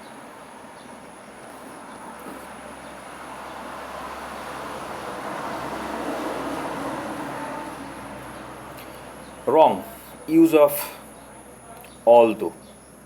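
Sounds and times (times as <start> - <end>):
vehicle passing: 2.4 - 10.2.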